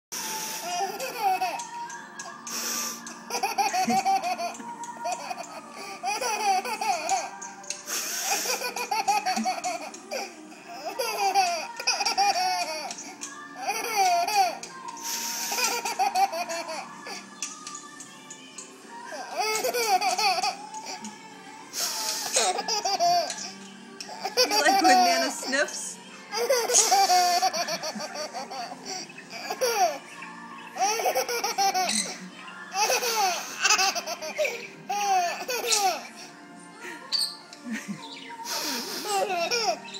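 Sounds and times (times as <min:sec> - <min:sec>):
baby giggling: 0:00.6 - 0:01.7, 0:03.2 - 0:07.4, 0:08.2 - 0:14.7, 0:15.4 - 0:16.9, 0:19.2 - 0:21.0, 0:22.1 - 0:25.6, 0:26.3 - 0:30.0, 0:30.8 - 0:36.1, 0:38.6 - 0:39.9.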